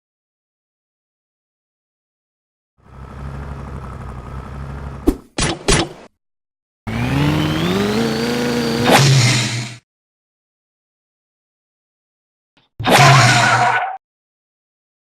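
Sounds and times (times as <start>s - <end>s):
car engine idling: 2.8s - 5.1s
engine revving: 2.8s - 5.2s, 6.9s - 9.8s.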